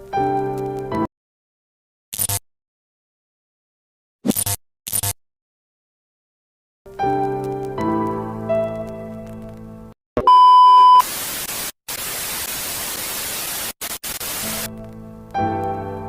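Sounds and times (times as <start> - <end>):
electric piano music: 6.9 - 9.9, 14.5 - 16.0
high beep tone: 10.2 - 11.0
white noise static hiss: 11.0 - 14.7.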